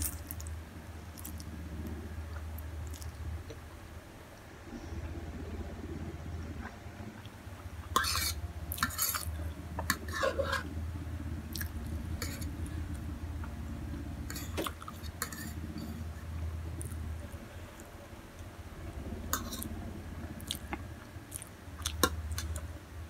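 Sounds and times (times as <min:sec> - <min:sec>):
chewing: 0:00.0 - 0:03.2, 0:11.5 - 0:13.5, 0:20.4 - 0:22.7
steady low hum: 0:00.0 - 0:23.0
utensil scraping a bowl: 0:07.9 - 0:10.7, 0:12.2 - 0:12.6, 0:14.3 - 0:16.2.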